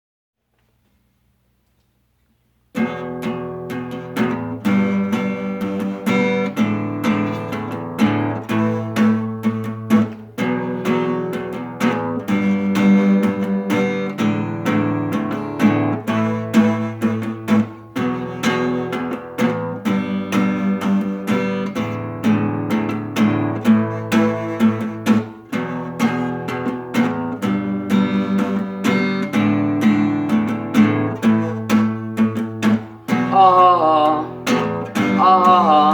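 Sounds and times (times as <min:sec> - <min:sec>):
guitar strumming chords: 0:02.7 - 0:35.9.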